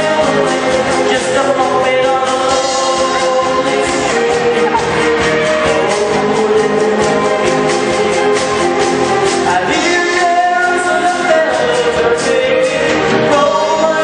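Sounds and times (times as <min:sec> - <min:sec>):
group singing pop song: 0:00.0 - 0:14.0
instrumental backing with beat: 0:00.0 - 0:14.0.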